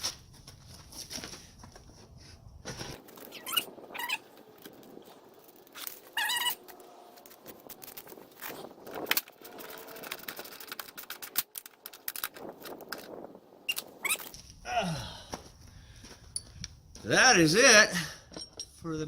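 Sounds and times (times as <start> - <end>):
high squeak: 3.3 - 4.3, 5.8 - 6.8
small metal clicks: 5.4 - 14.3.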